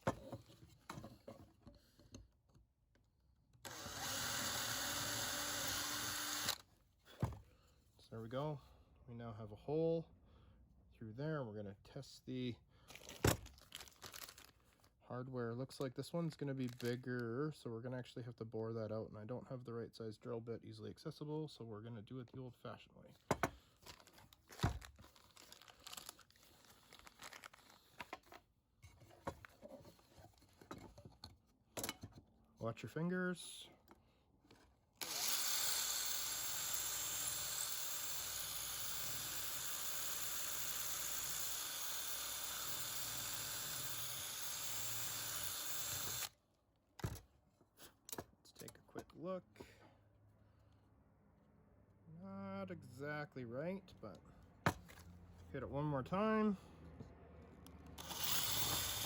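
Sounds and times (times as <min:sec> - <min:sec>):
power drill boring through wood: 0:03.6 - 0:06.6, 0:35.0 - 0:46.3, 0:58.0 - 0:59.0.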